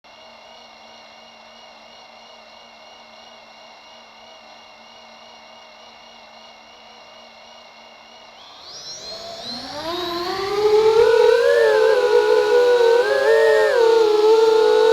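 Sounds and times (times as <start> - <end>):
drone motors whining: 8.4 - 14.9.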